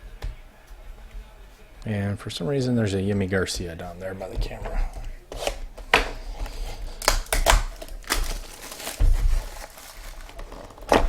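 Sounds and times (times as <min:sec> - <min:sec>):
cards rustling: 0:03.1 - 0:11.0
wrapper crinkling: 0:06.4 - 0:10.9.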